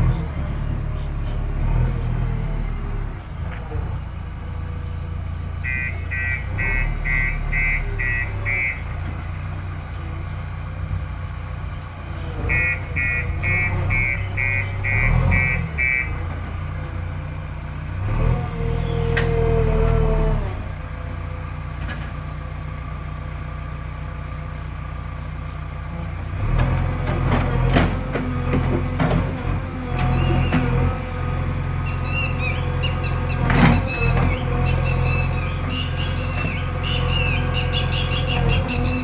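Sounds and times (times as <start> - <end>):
diesel engine under load: 0.0 - 39.0
reversing alarm beeping: 12.5 - 16.2.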